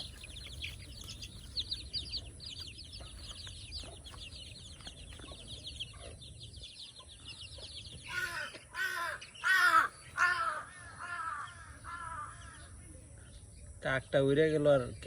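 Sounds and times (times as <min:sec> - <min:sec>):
crow cawing: 0:08.1 - 0:12.8.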